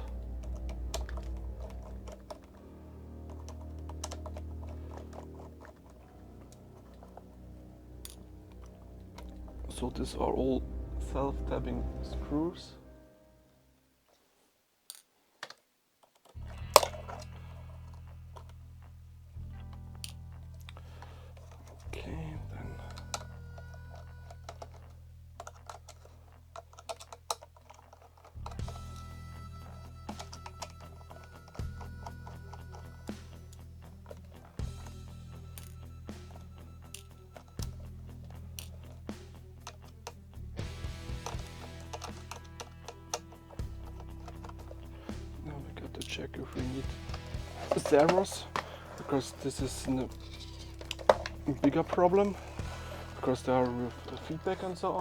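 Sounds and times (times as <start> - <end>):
small clicks of handled parts: 0.0 - 7.4, 14.9 - 18.6, 22.8 - 45.3, 45.9 - 54.4
steady low hum: 0.0 - 13.5.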